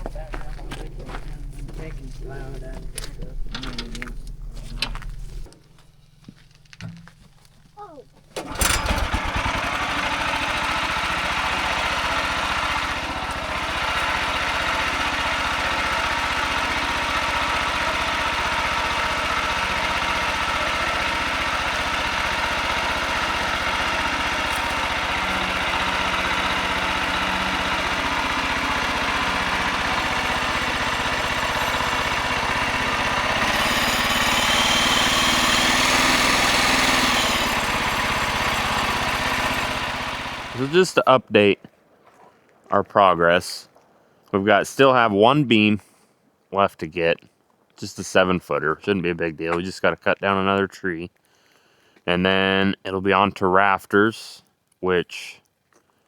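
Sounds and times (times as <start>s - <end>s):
small gas engine running: 0.0s - 41.0s.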